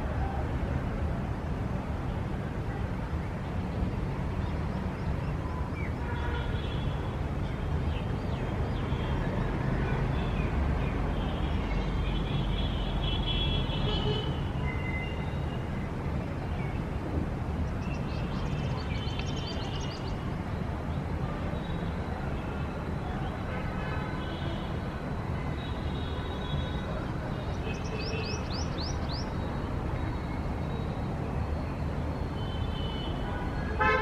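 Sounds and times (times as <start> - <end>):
low rumble of traffic: 0.0 - 34.0
small birds chirping: 17.6 - 20.2, 27.5 - 29.5.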